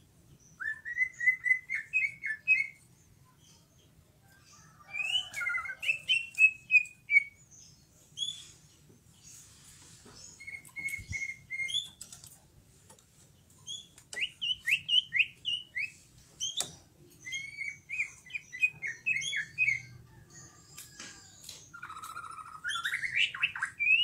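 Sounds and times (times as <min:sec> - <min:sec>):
bird singing whistled chirps: 0:00.4 - 0:02.8, 0:04.6 - 0:07.5, 0:10.4 - 0:12.0, 0:13.7 - 0:20.0, 0:21.7 - 0:24.0.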